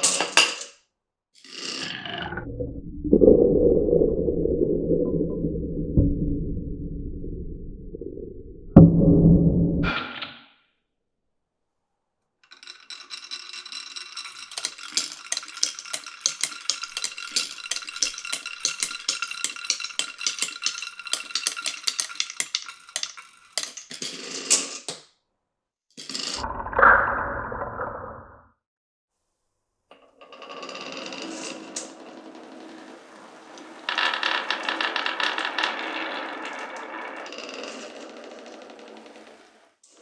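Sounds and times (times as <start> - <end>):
low rolling rumble: 2.4 - 9.9
marbles rolling and clattering: 12.4 - 25.1, 26.0 - 26.5, 30.4 - 39.5.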